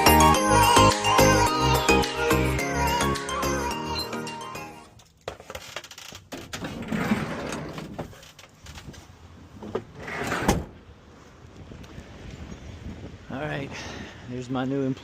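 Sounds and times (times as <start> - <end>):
van door sliding: 6.2 - 10.8.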